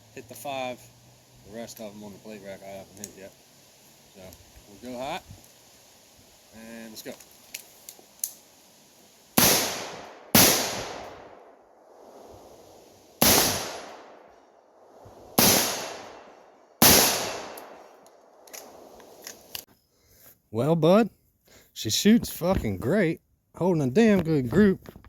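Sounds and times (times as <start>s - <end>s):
gunshots: 9.4s - 11.4s, 13.2s - 14.2s, 15.4s - 17.9s.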